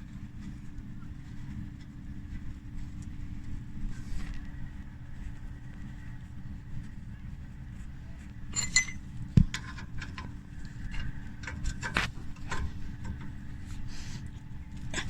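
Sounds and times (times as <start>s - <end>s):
steady low hum: 0.0s - 15.0s
metal tools clinking and knocking: 8.5s - 13.3s.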